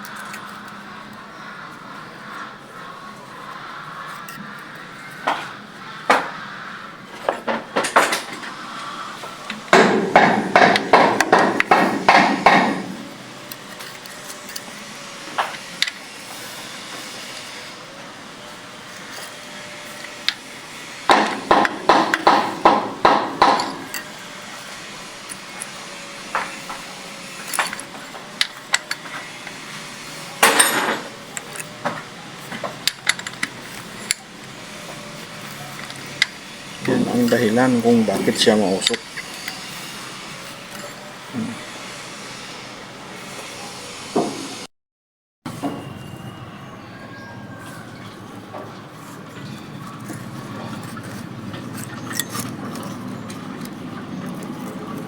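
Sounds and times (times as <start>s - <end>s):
metal tools tapping on engine: 21.1s - 41.6s, 49.3s - 54.7s.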